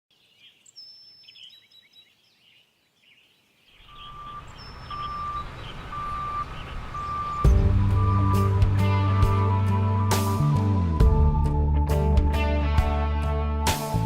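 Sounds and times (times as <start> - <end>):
birds chirping: 0.1 - 10.7
vehicle engine rumble: 3.8 - 13.0
backup alarm beeping: 3.9 - 9.0.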